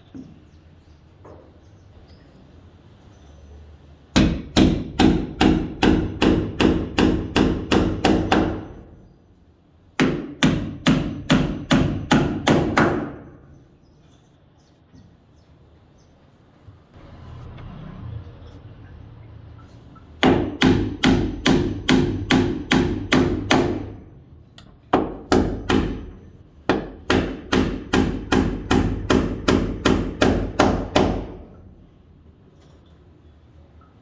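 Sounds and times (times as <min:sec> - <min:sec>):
hammer driving nail into wood: 0:04.2 - 0:08.8, 0:10.0 - 0:13.3, 0:20.2 - 0:24.0, 0:24.9 - 0:31.5.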